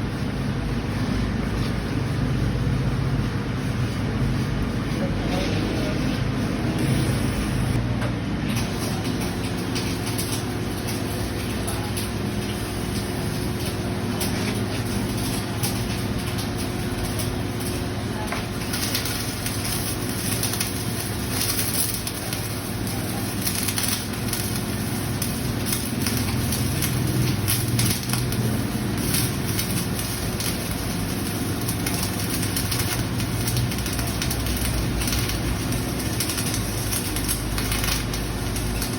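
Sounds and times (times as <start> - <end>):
welding arc crackling: 0.0 - 38.9.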